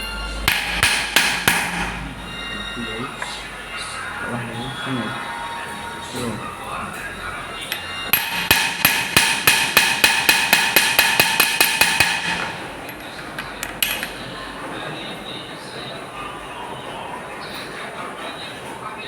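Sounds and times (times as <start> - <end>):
hammer tapping on metal: 0.4 - 2.4, 7.6 - 14.2.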